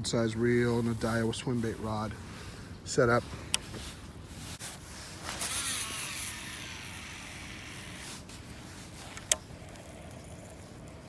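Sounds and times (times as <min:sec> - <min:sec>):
fishing reel spool whirring: 0:05.3 - 0:11.0.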